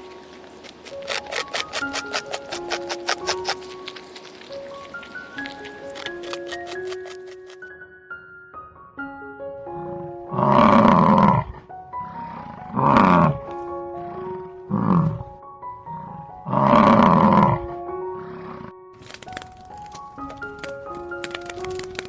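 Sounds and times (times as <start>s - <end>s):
rough animal calls: 0.0s - 7.7s, 9.8s - 22.0s
light plucked melody: 0.0s - 11.0s.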